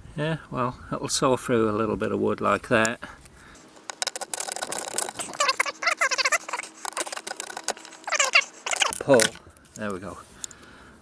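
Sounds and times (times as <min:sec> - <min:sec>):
saw rasping through wood: 0:03.6 - 0:09.2
squeaky chirps: 0:04.2 - 0:09.3.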